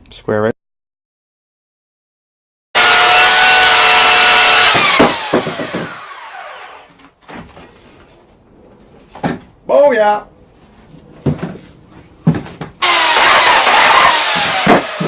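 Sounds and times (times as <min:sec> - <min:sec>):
chainsaw running: 0:02.8 - 0:06.9, 0:12.8 - 0:15.0
knocks: 0:04.7 - 0:06.0.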